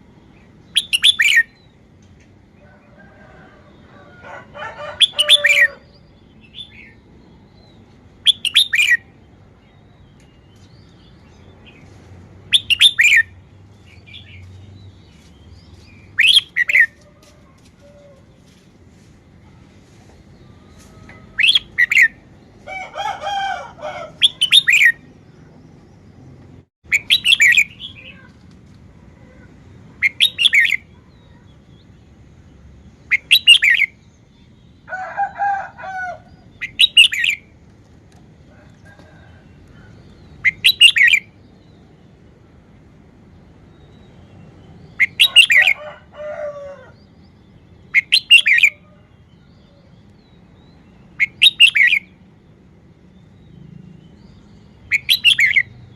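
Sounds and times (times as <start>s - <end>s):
bird whistling phrases: 0.8s - 1.6s, 4.9s - 5.8s, 12.5s - 13.3s, 16.2s - 17.0s, 21.3s - 22.2s, 26.9s - 28.3s, 33.1s - 33.9s, 40.4s - 41.2s, 44.9s - 45.8s, 48.0s - 48.8s, 51.2s - 52.1s, 54.9s - 55.7s.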